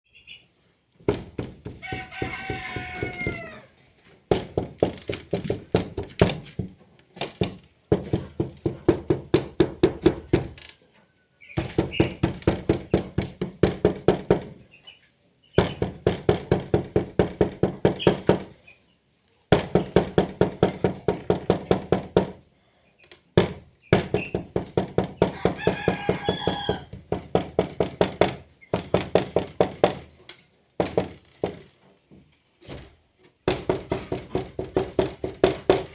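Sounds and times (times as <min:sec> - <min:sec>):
knuckles knocking on door: 0:01.0 - 0:03.4, 0:04.3 - 0:06.8, 0:07.4 - 0:10.6, 0:11.6 - 0:14.6, 0:15.6 - 0:18.5, 0:23.4 - 0:30.1, 0:33.5 - 0:35.9.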